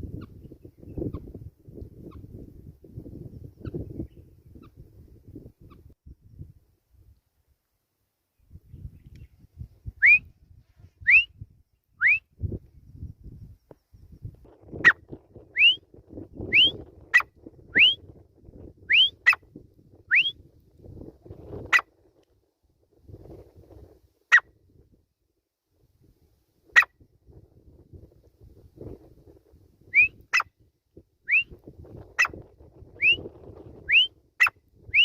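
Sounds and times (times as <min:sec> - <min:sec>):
bird rising whistled calls: 0:10.0 - 0:10.3, 0:11.0 - 0:11.4, 0:12.0 - 0:12.3, 0:15.5 - 0:15.8, 0:29.9 - 0:30.2, 0:31.3 - 0:31.5, 0:33.0 - 0:35.0.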